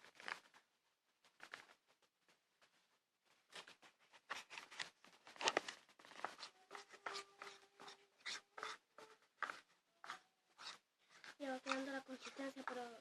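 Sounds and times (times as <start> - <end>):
utensil scraping slime on a plate: 6.2 - 13.0.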